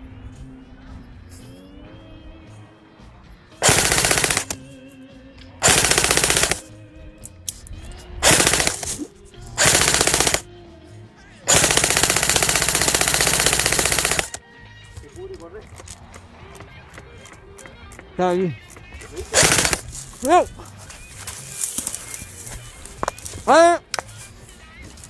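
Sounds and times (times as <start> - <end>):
airsoft guns full-auto bursts: 3.6 - 4.6, 5.6 - 6.7, 8.2 - 10.5, 11.5 - 14.4, 19.3 - 20.0.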